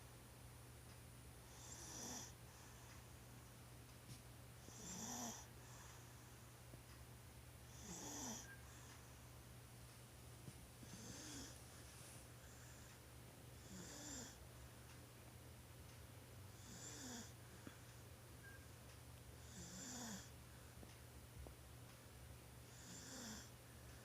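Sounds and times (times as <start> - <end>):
toddler snoring softly: 1.5 - 2.9, 4.6 - 6.3, 7.7 - 9.0, 10.8 - 12.9, 13.6 - 14.4, 16.5 - 17.4, 19.4 - 20.3, 22.7 - 23.6.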